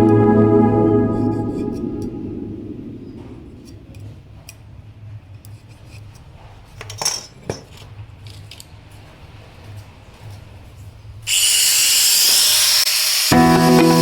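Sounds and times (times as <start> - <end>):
faint low hum: 0.0 - 5.4.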